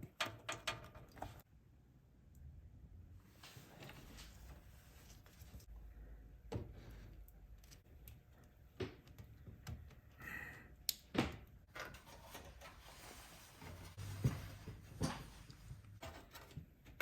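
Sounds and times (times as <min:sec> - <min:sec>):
computer parts knocking and clicking: 0:00.0 - 0:01.4.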